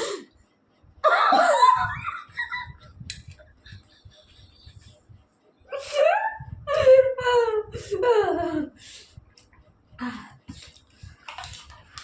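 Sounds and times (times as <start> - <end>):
person laughing: 1.0 - 5.0, 5.7 - 8.8.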